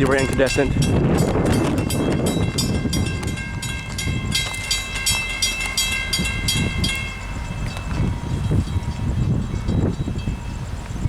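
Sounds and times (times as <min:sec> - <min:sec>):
low train rumble: 0:00.0 - 0:11.0
railroad crossing bells ringing: 0:00.0 - 0:11.0.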